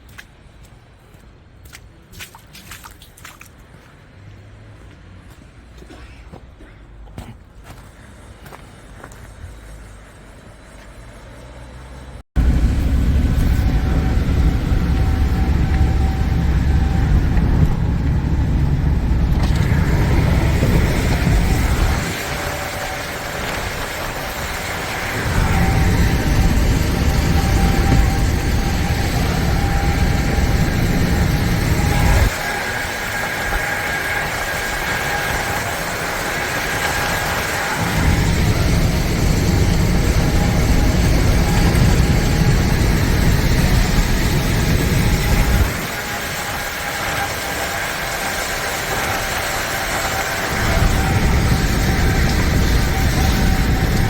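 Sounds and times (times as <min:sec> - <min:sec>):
low mechanical rumble: 0:12.4 - 0:32.6, 0:37.6 - 0:45.8, 0:50.5 - 0:54.0
machine whining: 0:12.4 - 0:54.0.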